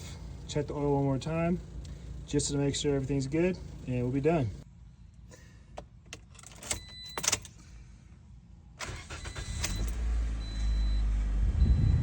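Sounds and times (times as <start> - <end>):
car engine cranking and idling: 0.0 - 4.6, 8.8 - 12.0
short beeps: 9.2 - 12.0.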